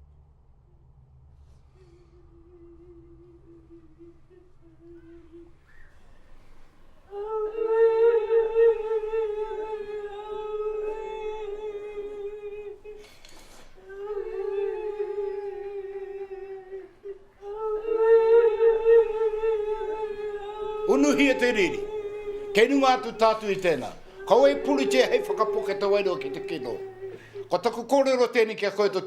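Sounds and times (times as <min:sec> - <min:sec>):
woman singing high wailing notes: 0:07.1 - 0:13.0, 0:13.8 - 0:27.6
sharp breath: 0:12.9 - 0:13.9, 0:25.9 - 0:27.6.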